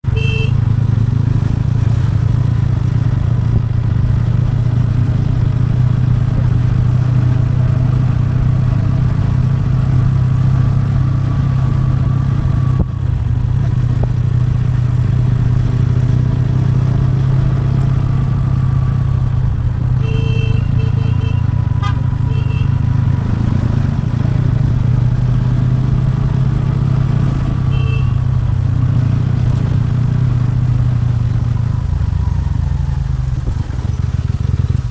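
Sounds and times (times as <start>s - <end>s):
motorcycle engine droning: 0.0s - 34.9s
horn beeps: 0.1s - 0.6s, 20.0s - 23.0s, 27.6s - 28.4s.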